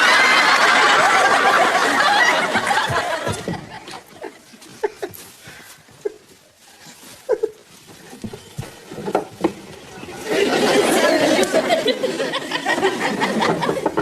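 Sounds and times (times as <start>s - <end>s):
studio audience laughing: 0.0s - 5.1s, 10.2s - 14.0s.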